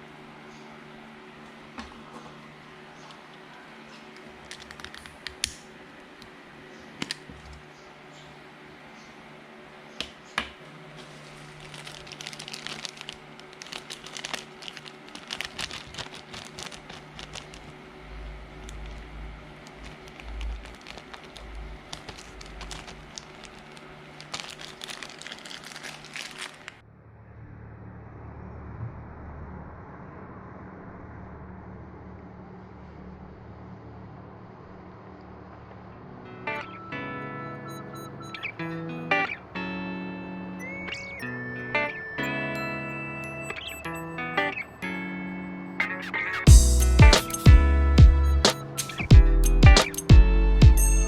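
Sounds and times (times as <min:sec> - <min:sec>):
muffled low hum: 0:00.0 - 0:36.2
wrapping material crinkling: 0:04.1 - 0:05.7, 0:10.9 - 0:26.8.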